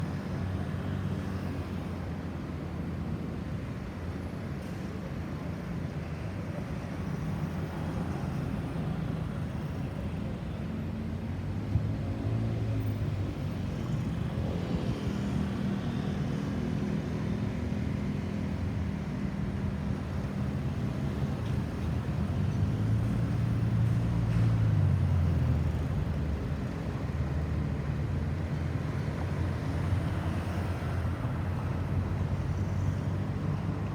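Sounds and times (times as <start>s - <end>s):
road traffic hum: 0.1s - 33.9s.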